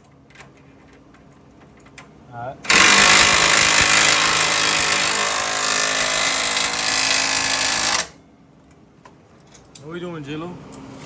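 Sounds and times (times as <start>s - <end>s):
impact wrench running on a nut: 2.7s - 8.2s.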